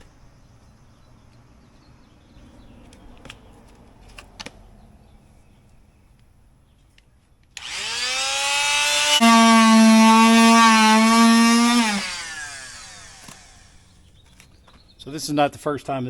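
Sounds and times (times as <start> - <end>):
oscillating multi-tool buzzing: 7.6 - 13.9.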